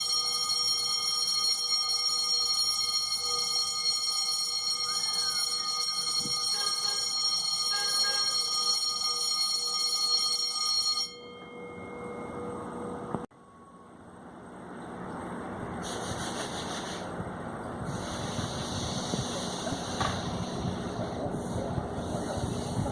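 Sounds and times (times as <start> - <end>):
level crossing alarm ringing: 0.0 - 14.1.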